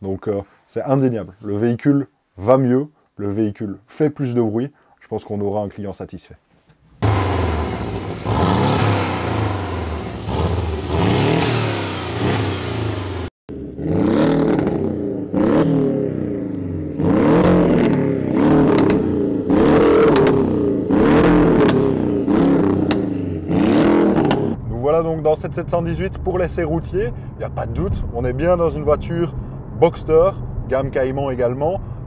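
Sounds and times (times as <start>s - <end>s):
exhaust cracks: 6.9s - 32.0s
car engine revving: 7.0s - 24.7s.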